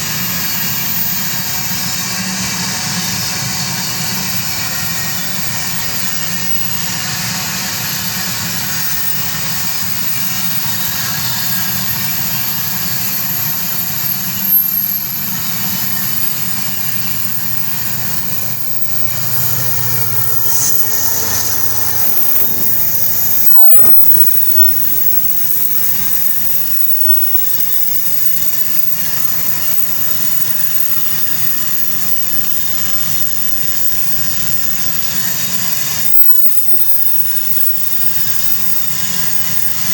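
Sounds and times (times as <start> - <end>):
high wheel squeal: 0.0 - 39.9
freight train rumbling past: 17.1 - 24.6.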